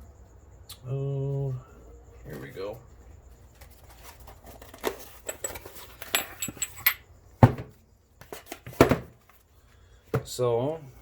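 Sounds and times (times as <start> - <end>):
metal tools clinking on workbench: 5.0 - 7.1.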